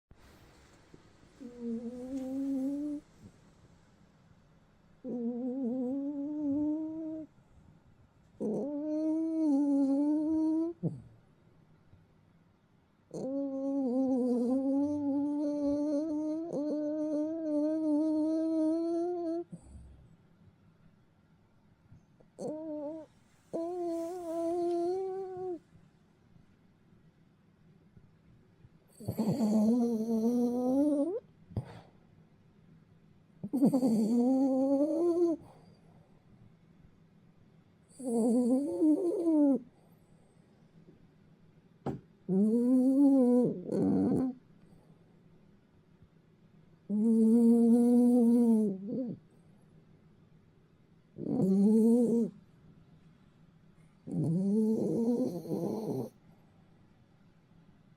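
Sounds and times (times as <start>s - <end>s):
dog snoring: 1.4s - 3.3s, 5.0s - 7.3s, 8.4s - 11.2s, 13.1s - 20.1s, 22.4s - 25.6s, 28.9s - 31.9s, 33.4s - 35.7s, 37.9s - 39.6s, 42.3s - 44.4s, 46.9s - 49.2s, 51.2s - 52.4s, 54.0s - 56.2s.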